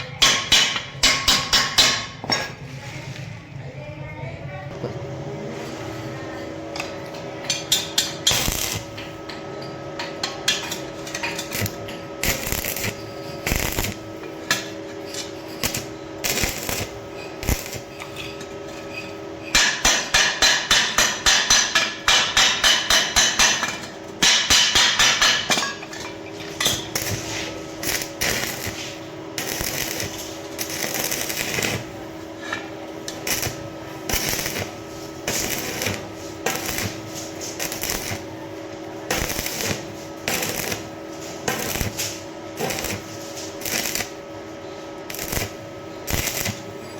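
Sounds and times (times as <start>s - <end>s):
hammer striking steel pipe: 0.2s - 2.2s, 19.5s - 25.8s
electrical hum: 2.9s - 46.9s.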